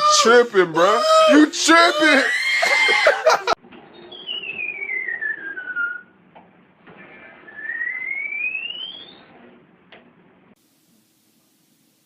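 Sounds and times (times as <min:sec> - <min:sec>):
whistled note sliding in pitch: 0:04.1 - 0:06.1.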